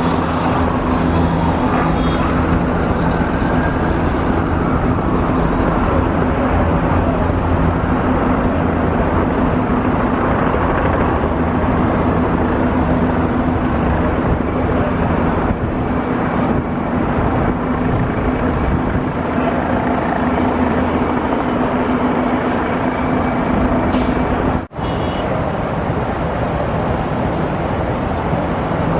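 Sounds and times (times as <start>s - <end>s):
engine drone: 0.0s - 28.9s.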